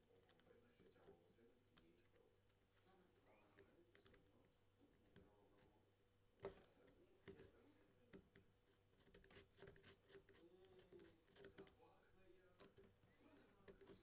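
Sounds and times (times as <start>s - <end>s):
faint small clicks and ticks: 0.1s - 2.9s, 3.6s - 4.4s.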